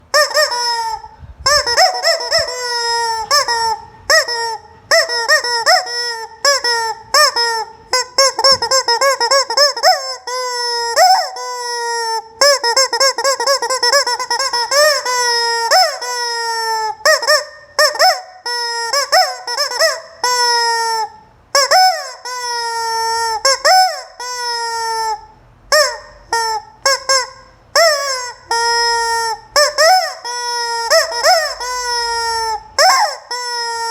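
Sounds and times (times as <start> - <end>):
rubber chicken toy squawking: 0.0 - 33.9.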